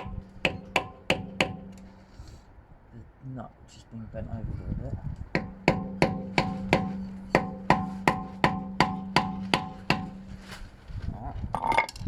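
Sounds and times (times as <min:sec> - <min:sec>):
hammer tapping on metal: 0:00.0 - 0:01.9, 0:05.4 - 0:10.2.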